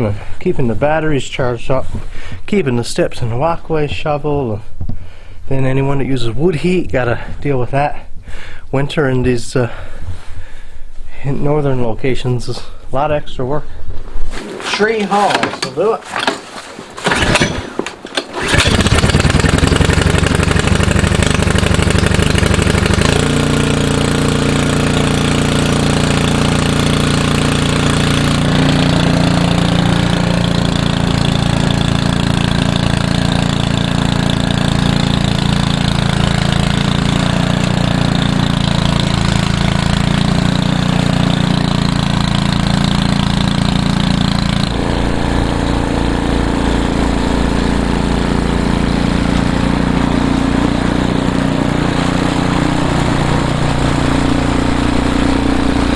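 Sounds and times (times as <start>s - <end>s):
small engine running: 17.0s - 55.9s.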